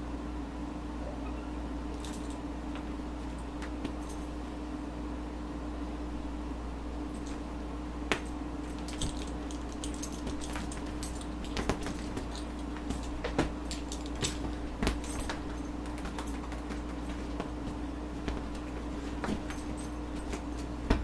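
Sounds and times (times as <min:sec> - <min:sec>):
belt buckle rattling and clinking: 0:02.0 - 0:02.4, 0:03.2 - 0:04.4, 0:07.1 - 0:07.4, 0:08.2 - 0:21.0.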